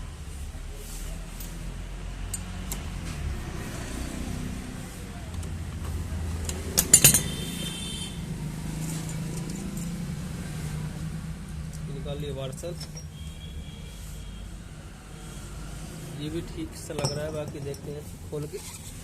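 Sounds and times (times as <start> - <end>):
low traffic rumble: 0.0 - 19.0
metal tools clinking: 6.4 - 7.7, 8.7 - 10.0, 12.4 - 13.2, 16.8 - 18.8
loud metallic clank: 6.8 - 7.5.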